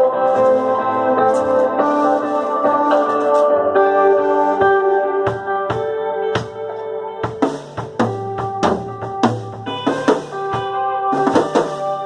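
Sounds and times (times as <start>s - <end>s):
live band music: 0.0s - 6.7s, 7.3s - 12.0s
drum kit hits and fills: 4.5s - 12.0s.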